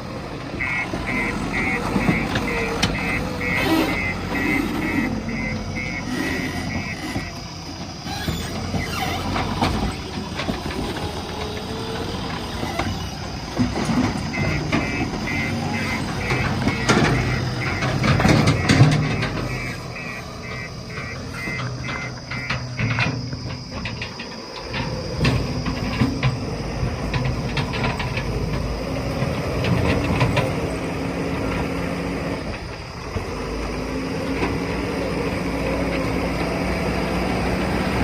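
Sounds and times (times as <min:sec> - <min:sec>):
diesel engine under load: 0:00.0 - 0:38.0
reversing alarm beeping: 0:00.6 - 0:09.2, 0:13.6 - 0:28.2
sharp metallic knocks: 0:12.8 - 0:26.4.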